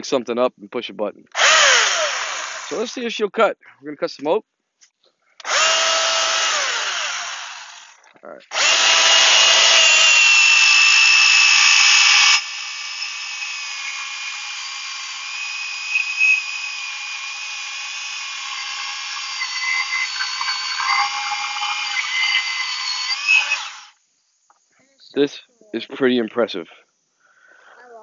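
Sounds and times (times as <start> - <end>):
electric chainsaw cutting wood: 1.4 - 2.9, 5.4 - 24.0.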